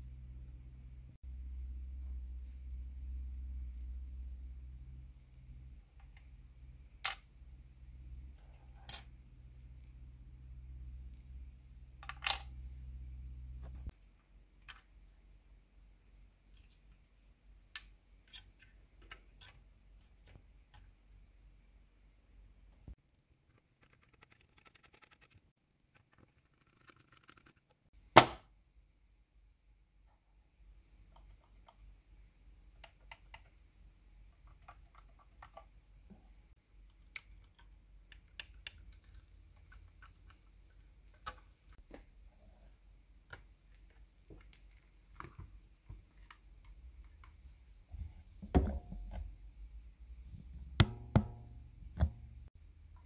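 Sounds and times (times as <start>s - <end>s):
low hum: 0.0s - 5.9s.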